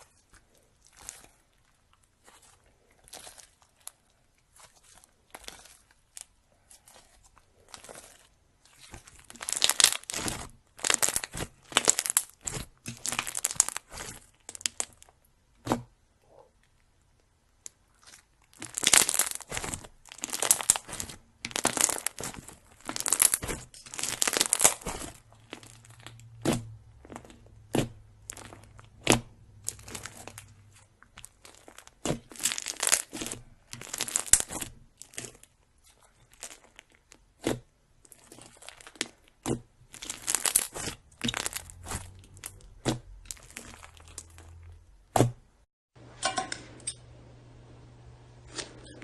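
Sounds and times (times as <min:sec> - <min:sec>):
slime squished by hand: 0:00.0 - 0:16.8, 0:17.6 - 0:45.5.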